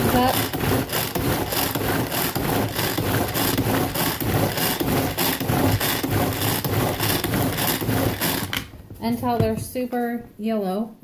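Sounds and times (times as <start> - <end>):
pull cord whisk whirring: 0.0 - 8.8.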